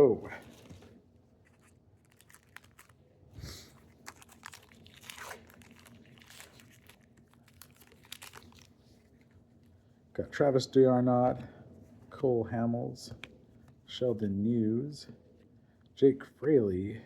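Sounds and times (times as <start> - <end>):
cards clicking and rustling: 0.4 - 3.0
wrapper crinkling and tearing: 1.4 - 3.1, 3.7 - 9.4.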